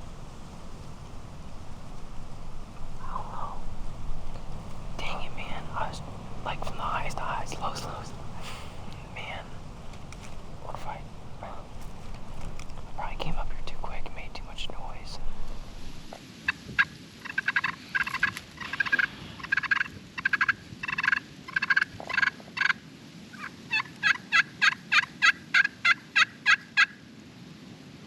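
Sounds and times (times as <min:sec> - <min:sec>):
turkey rattling calls: 0:00.0 - 0:16.2, 0:17.2 - 0:22.8
turkey yelping: 0:17.2 - 0:22.8, 0:23.4 - 0:27.0.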